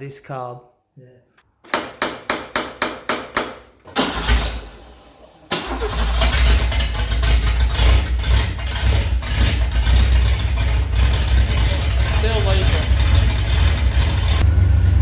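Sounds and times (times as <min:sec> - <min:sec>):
car engine running: 0:05.9 - 0:15.0.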